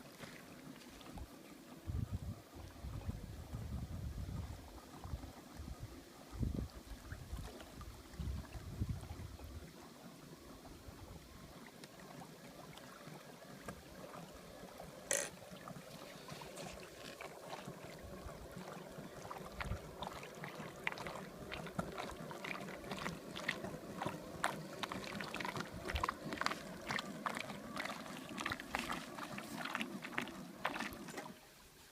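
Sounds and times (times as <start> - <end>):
water lapping and splashing: 0.0 - 31.9.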